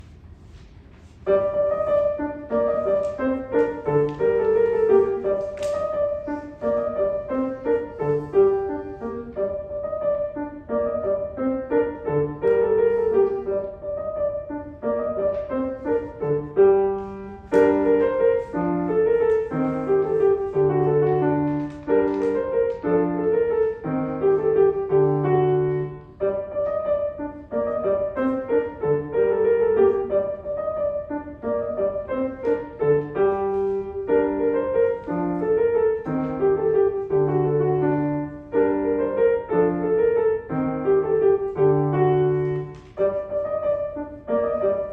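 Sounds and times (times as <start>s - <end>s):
solo piano piece: 0.0s - 44.9s.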